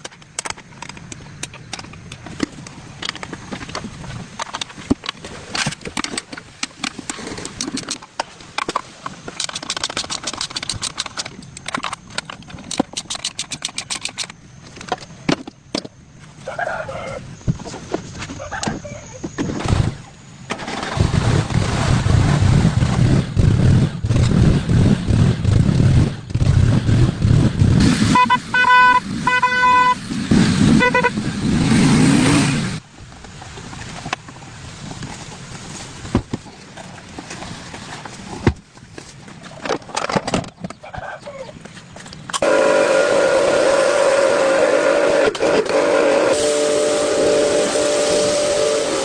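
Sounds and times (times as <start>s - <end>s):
car horn honks: 28.1s - 30.0s, 30.8s - 31.2s.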